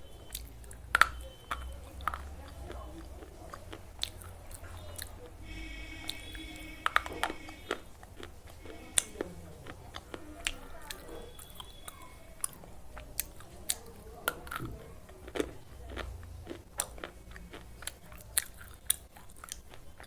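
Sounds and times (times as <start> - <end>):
slate pencils being chewed: 0.0 - 20.0.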